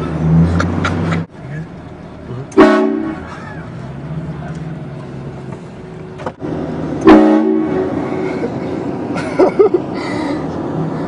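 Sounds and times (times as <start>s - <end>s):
train horn blast: 2.6s - 3.3s, 7.0s - 8.0s.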